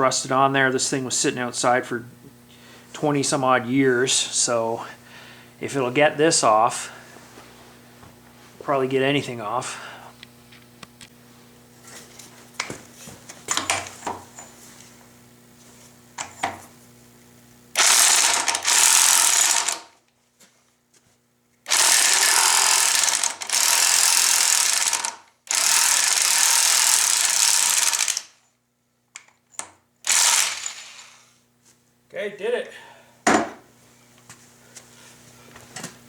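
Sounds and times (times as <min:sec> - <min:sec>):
electric impact wrench hammering: 0:17.7 - 0:20.0, 0:21.7 - 0:28.4, 0:30.0 - 0:31.3.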